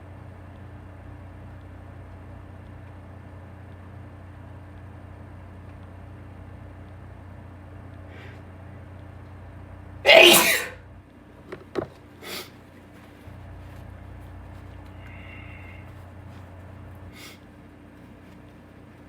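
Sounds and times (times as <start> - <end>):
man sneezing loudly: 10.1 - 10.8.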